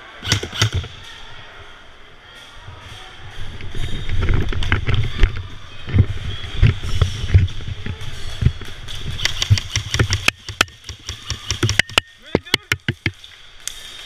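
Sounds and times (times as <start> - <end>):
airsoft guns firing: 0.2 - 1.2, 8.9 - 13.2.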